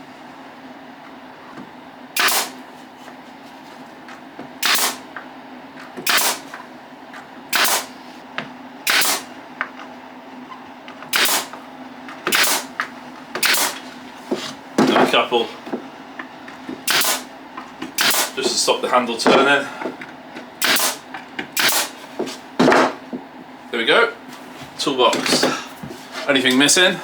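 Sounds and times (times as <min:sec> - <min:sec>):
steady low hum: 0:00.0 - 0:27.0
pin nailer firing: 0:02.2 - 0:02.6, 0:04.6 - 0:05.1, 0:06.0 - 0:06.6, 0:07.5 - 0:08.0, 0:08.8 - 0:09.3, 0:11.1 - 0:11.6, 0:12.3 - 0:12.7, 0:13.4 - 0:13.8, 0:16.8 - 0:17.3, 0:18.0 - 0:18.4, 0:20.6 - 0:22.0.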